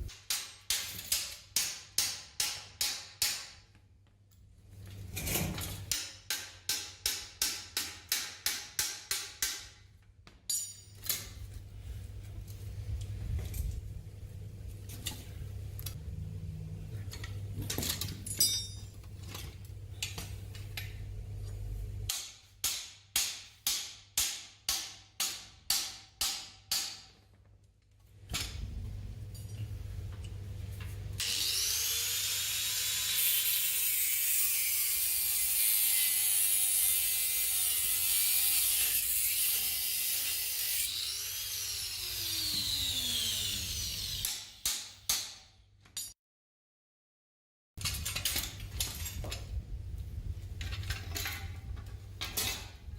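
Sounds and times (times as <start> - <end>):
power tool running: 31.2 - 44.3.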